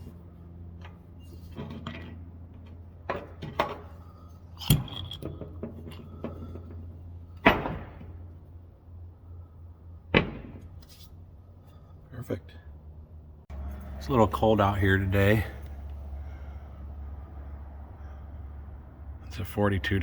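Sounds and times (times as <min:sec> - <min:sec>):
steady low hum: 0:00.0 - 0:20.0
sharp loud knocks: 0:10.1 - 0:10.6.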